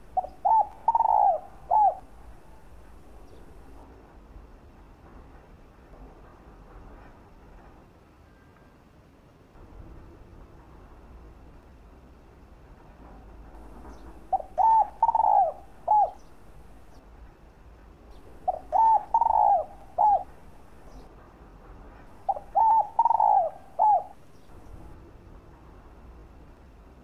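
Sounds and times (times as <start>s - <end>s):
dove cooing: 0.0s - 3.8s, 13.6s - 17.0s, 18.3s - 21.0s, 22.1s - 24.9s.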